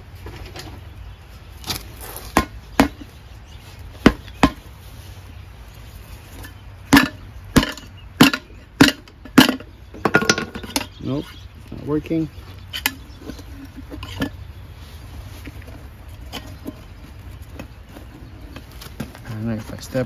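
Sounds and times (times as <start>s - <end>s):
tools knocking on wheel: 6.9s - 11.0s.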